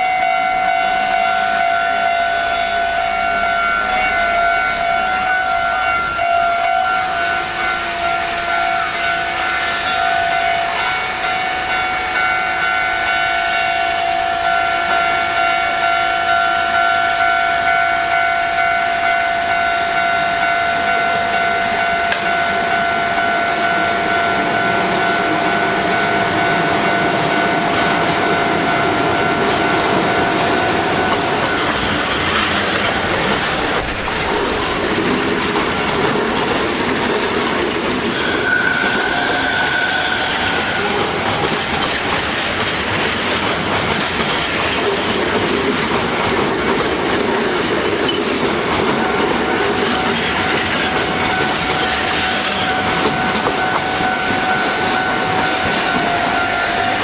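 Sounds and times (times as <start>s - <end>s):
steady high tone: 0.0s - 36.2s, 38.0s - 41.8s, 48.9s - 57.0s
electric train passing: 0.0s - 57.0s
wheels clattering over rail joints: 29.8s - 57.0s.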